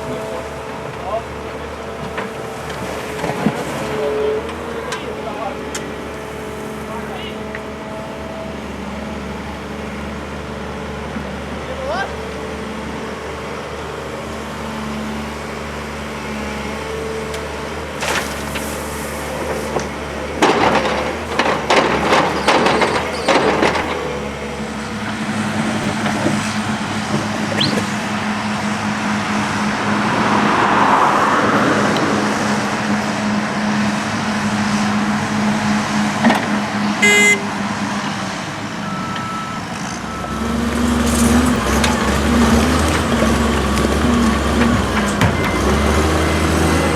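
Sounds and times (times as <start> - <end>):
heavy machinery engine running: 0.0 - 46.9
metallic clanks and knocks: 19.8 - 24.4, 44.4 - 46.1
high pitched horn toot: 37.0 - 37.6.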